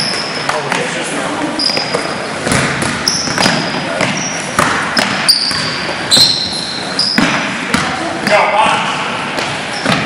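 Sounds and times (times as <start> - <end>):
sneakers squeaking on hardwood: 0.0 - 0.7, 1.5 - 8.4, 9.4 - 10.0
basketball bouncing: 1.7 - 6.4, 7.1 - 8.8, 9.4 - 10.0.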